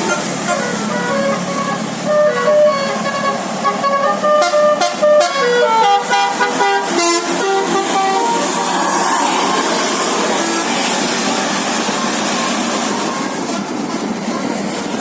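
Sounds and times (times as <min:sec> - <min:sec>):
bus musical horn tune: 0:00.0 - 0:08.8
steady noisy rush: 0:06.3 - 0:15.0.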